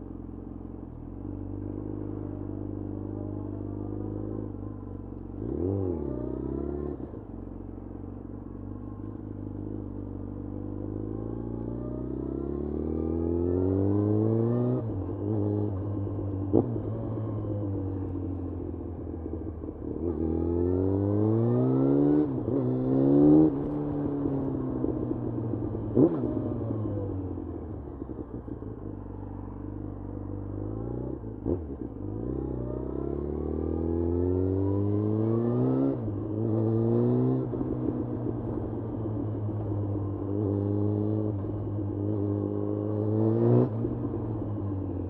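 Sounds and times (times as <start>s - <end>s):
motorcycle engine revving: 19.5s - 29.0s, 29.8s - 45.0s.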